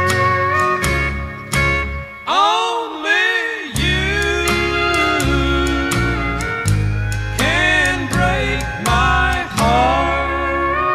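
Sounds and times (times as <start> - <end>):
steel guitar sliding: 3.8 - 10.9.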